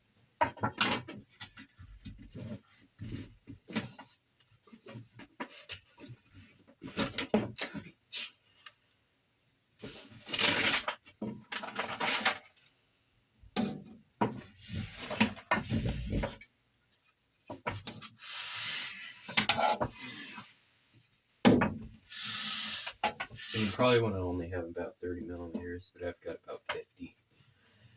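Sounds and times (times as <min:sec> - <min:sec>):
rubbing and scraping: 0:14.3 - 0:21.2, 0:22.1 - 0:24.5.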